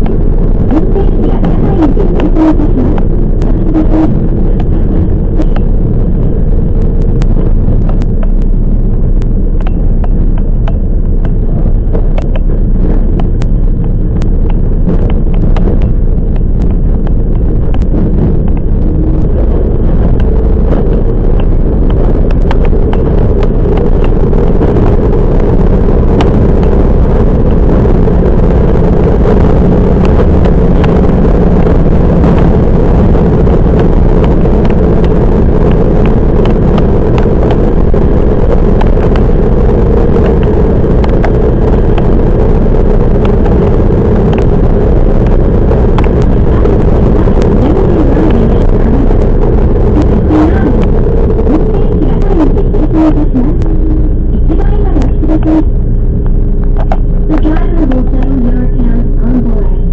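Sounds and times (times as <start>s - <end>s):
sharp clicks and knocks: 7.1s - 8.5s, 9.2s - 19.3s, 21.3s - 24.9s, 33.7s - 39.3s, 56.2s - 57.5s.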